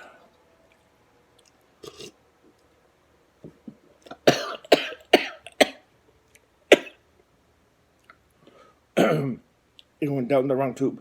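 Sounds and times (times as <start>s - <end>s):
man coughing hard: 4.2s - 5.8s, 6.7s - 7.0s, 9.0s - 9.4s.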